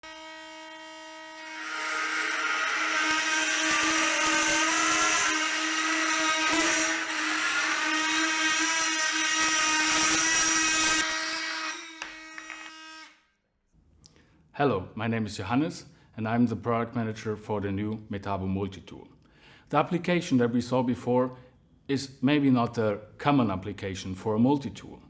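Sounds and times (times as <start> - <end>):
blade cutting material: 0.0 - 13.2
oscillating multi-tool buzzing: 0.0 - 13.3
tool clicks: 12.0 - 12.8.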